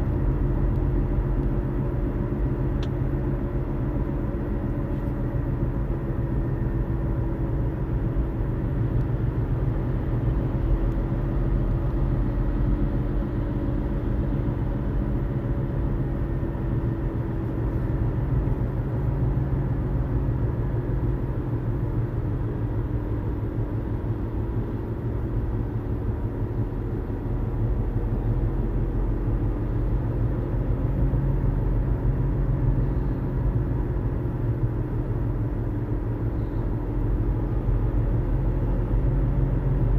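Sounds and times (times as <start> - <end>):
car cabin rumble while driving: 0.0 - 39.9
faint hum: 35.5 - 37.7.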